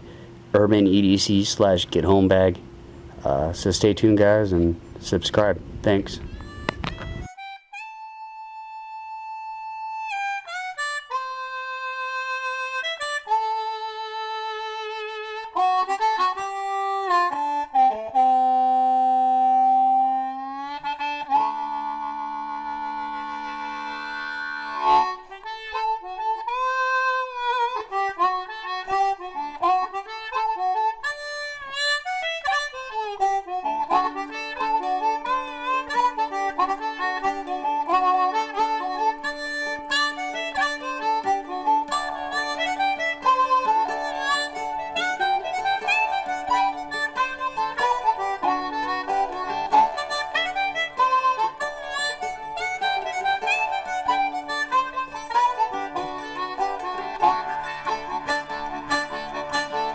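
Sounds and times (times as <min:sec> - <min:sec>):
harmonica playing bending melody: 0:03.2 - 0:59.9
acoustic guitar strumming: 0:15.2 - 0:59.9.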